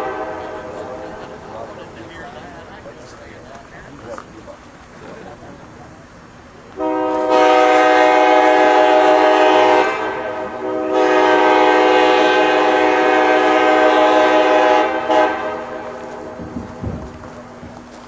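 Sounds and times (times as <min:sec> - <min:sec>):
locomotive air horn blasts: 0:00.0 - 0:01.2, 0:06.8 - 0:16.4.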